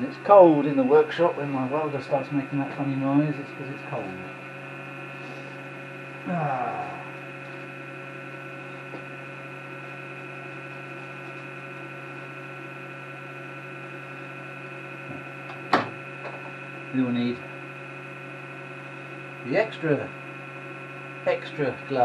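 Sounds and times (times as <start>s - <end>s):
welder power unit humming: 0.0s - 22.0s.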